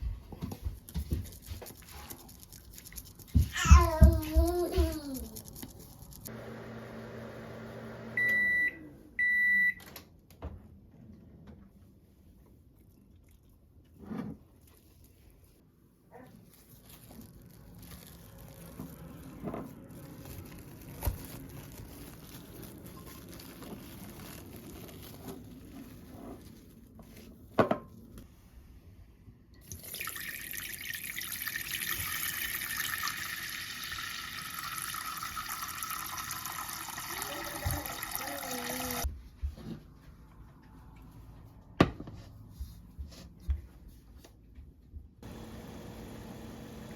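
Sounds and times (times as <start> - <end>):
tap water running into sink: 29.7 - 39.0.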